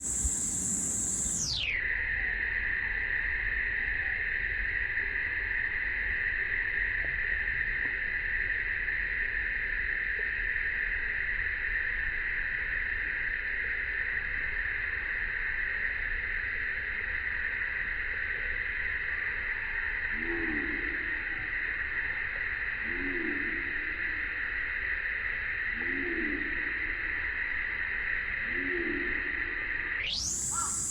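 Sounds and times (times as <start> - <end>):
cicadas buzzing: 0.0 - 2.9, 14.9 - 30.9.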